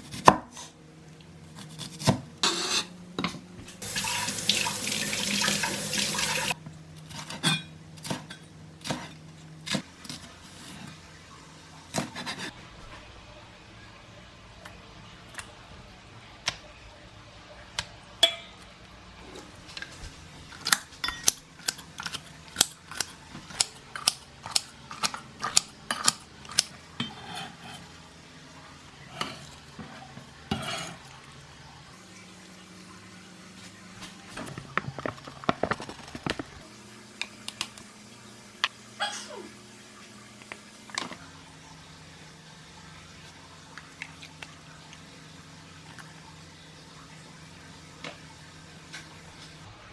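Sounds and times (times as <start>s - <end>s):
utensils clinking against dishes: 7.2s - 8.5s.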